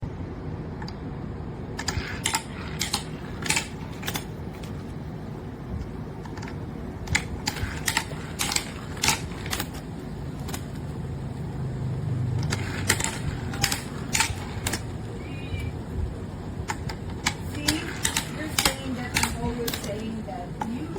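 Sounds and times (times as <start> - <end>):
wooden toy cars clacking: 12.4 - 15.8.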